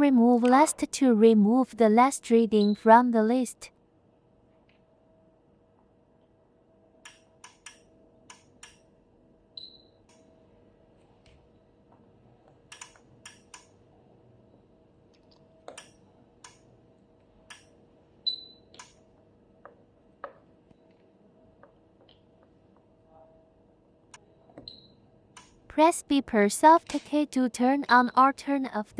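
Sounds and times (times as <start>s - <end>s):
multimeter short high beeps: 18.3s - 18.7s.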